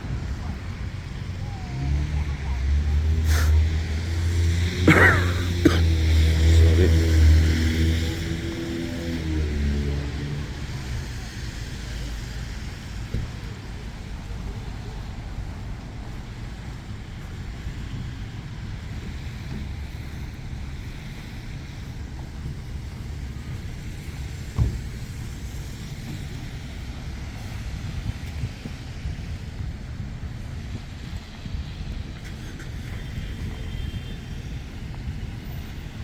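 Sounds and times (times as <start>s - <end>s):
road traffic passing: 0.0s - 36.0s
vehicle engine hum: 0.0s - 36.0s
wind buffeting microphone: 9.2s - 36.0s.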